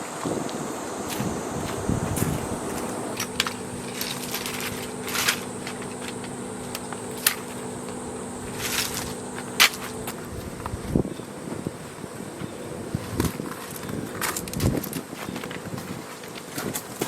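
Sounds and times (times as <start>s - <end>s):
steady low hum: 0.0s - 17.0s
clicks and rustles of handling: 13.0s - 17.0s.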